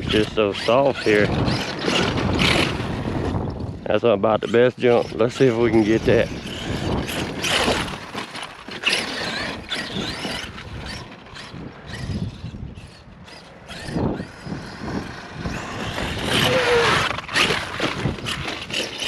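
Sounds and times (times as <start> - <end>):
electric motor whining: 0.0 - 3.8, 4.4 - 19.0
tyres churning dirt: 0.0 - 19.0.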